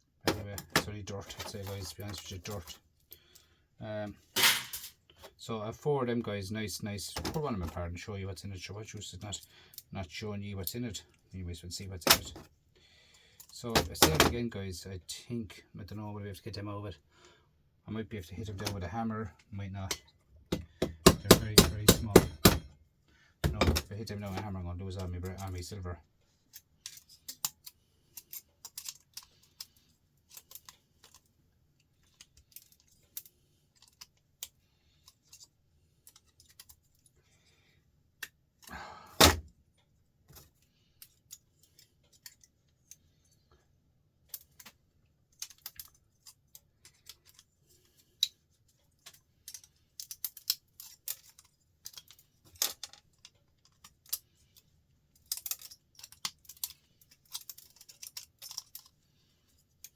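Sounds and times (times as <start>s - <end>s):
metal parts clicking and tapping: 19.8s - 22.8s, 26.5s - 31.3s, 32.0s - 37.2s, 40.3s - 43.4s, 44.2s - 59.9s.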